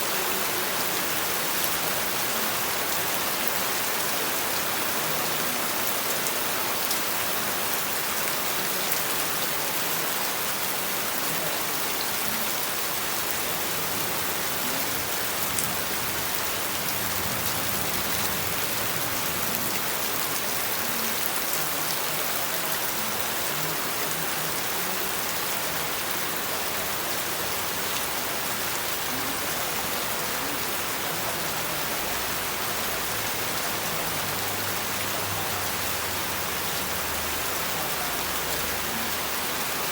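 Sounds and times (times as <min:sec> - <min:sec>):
steady rain hiss: 0:00.0 - 0:39.9
rain drop ticks: 0:14.4 - 0:21.7.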